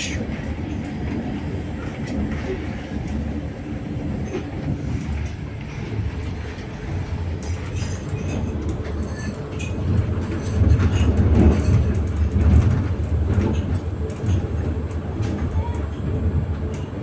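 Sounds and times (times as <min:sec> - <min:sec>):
train carriage rumbling on rails: 0:00.0 - 0:17.0.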